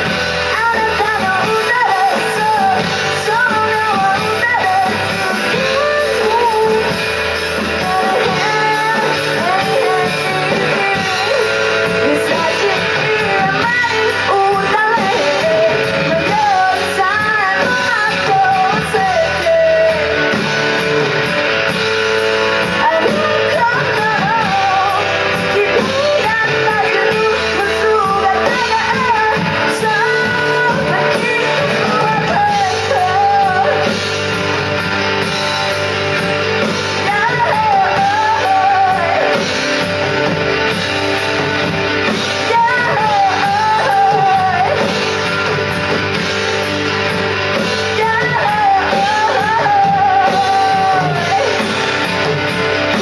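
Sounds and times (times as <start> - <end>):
guitar: 0.0 - 53.0
person singing: 0.0 - 53.0.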